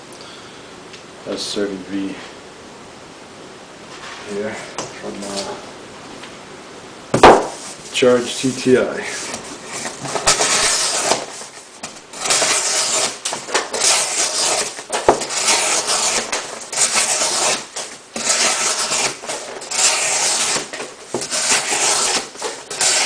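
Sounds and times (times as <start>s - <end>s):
knife blade slicing cardboard: 7.2s - 7.8s, 9.2s - 23.0s.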